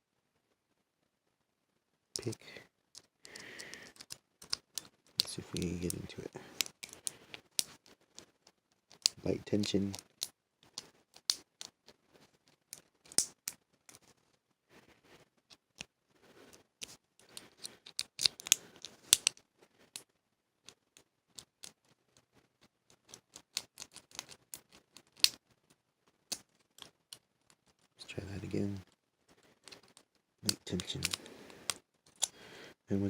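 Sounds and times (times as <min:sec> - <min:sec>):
lock pick clicking and scratching: 0:03.0 - 0:11.9, 0:12.5 - 0:14.0, 0:16.8 - 0:19.4, 0:20.7 - 0:21.8, 0:22.9 - 0:25.4, 0:26.3 - 0:28.0, 0:29.6 - 0:32.4.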